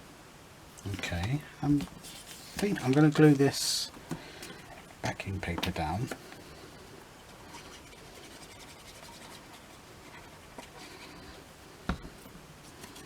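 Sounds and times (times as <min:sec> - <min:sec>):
paper scratching and rustling: 0:00.9 - 0:03.8, 0:07.2 - 0:11.4, 0:12.6 - 0:13.0.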